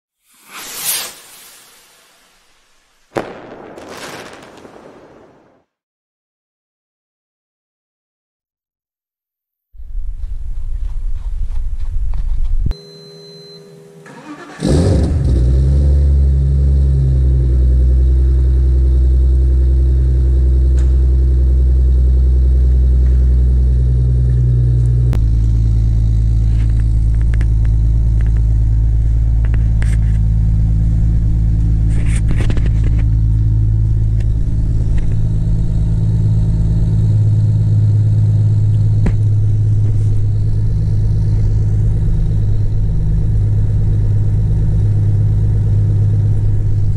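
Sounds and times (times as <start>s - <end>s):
car engine starting and idling: 14.0s - 46.9s.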